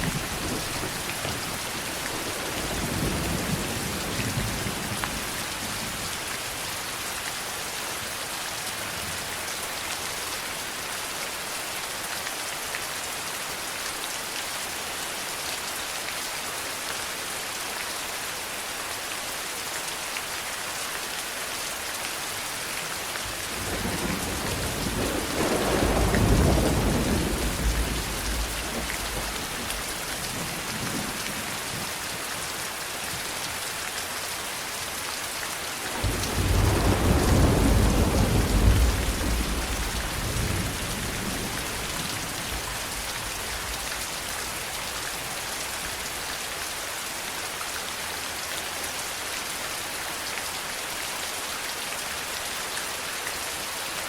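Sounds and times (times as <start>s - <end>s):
thunder rumbling: 0.0s - 4.9s, 23.4s - 31.9s, 35.9s - 43.9s
heavy rain falling: 0.0s - 54.0s.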